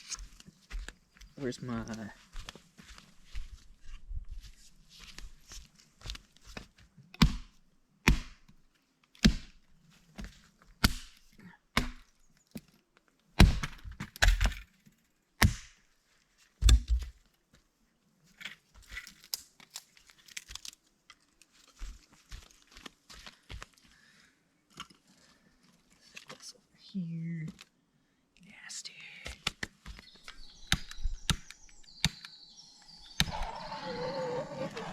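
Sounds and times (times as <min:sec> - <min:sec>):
wood cracking and rustling: 0:18.3 - 0:22.6
kindling being split: 0:18.8 - 0:21.5.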